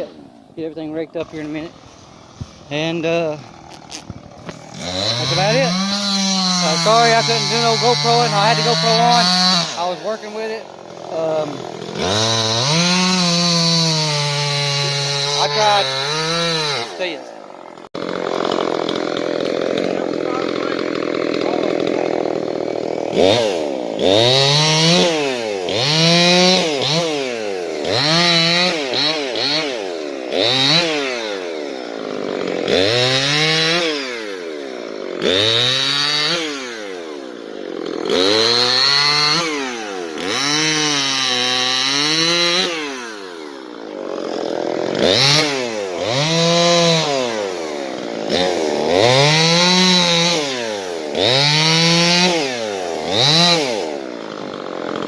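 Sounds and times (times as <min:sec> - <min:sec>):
chainsaw revving: 0:00.0 - 0:55.0.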